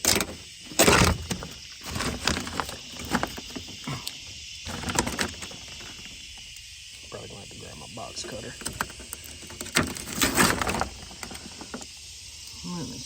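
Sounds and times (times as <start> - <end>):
plastic crinkling and crackling: 0.0 - 6.1, 8.6 - 11.9.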